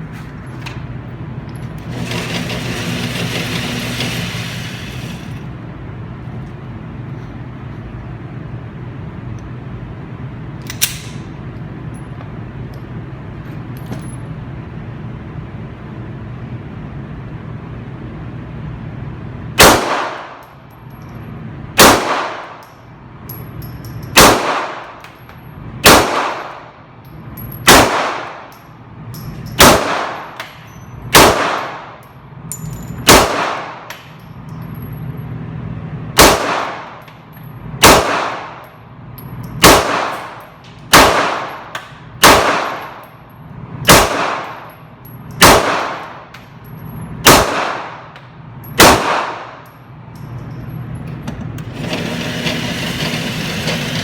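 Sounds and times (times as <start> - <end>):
steady low hum: 0.0 - 54.0
pistol shots with echo: 19.6 - 20.4, 21.8 - 22.6, 24.2 - 25.0, 25.8 - 26.8, 27.7 - 28.5, 29.6 - 30.4, 31.1 - 32.0, 33.0 - 34.0, 36.2 - 37.0, 37.8 - 38.7, 39.6 - 43.0, 43.9 - 44.7, 45.4 - 46.3, 47.2 - 48.2, 48.8 - 49.7.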